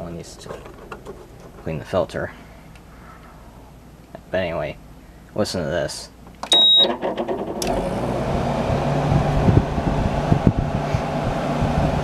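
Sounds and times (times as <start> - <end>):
air conditioner humming: 0.0 - 12.0
rattling knocks: 0.4 - 1.8.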